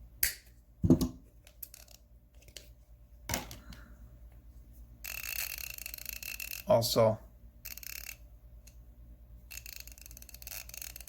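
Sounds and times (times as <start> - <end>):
ratchet clicks: 5.0 - 6.7, 7.6 - 8.2, 9.5 - 11.0.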